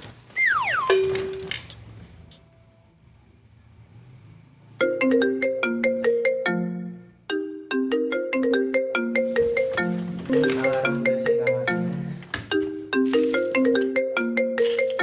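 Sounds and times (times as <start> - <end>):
phone alarm ringtone: 0.4 - 1.5, 7.4 - 15.0.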